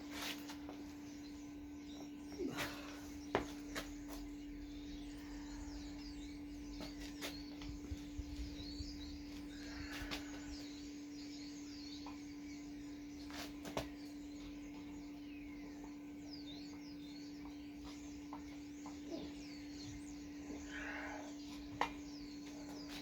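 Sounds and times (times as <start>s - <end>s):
birds twittering: 0.0s - 23.0s
steady low hum: 0.0s - 23.0s.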